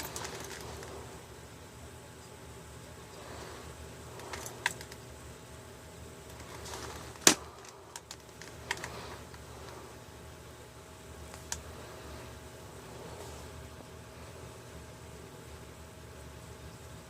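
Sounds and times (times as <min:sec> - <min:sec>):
hard plastic parts clicking: 0:00.0 - 0:00.9, 0:04.2 - 0:05.0, 0:06.3 - 0:09.4.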